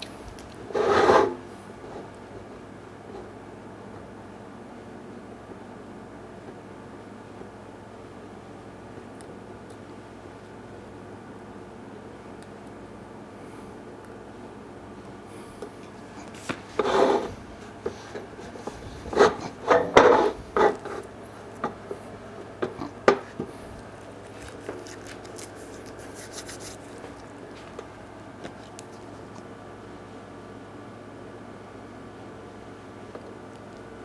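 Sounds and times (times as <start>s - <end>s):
objects scraping on wood: 0.7s - 1.4s, 16.2s - 23.7s.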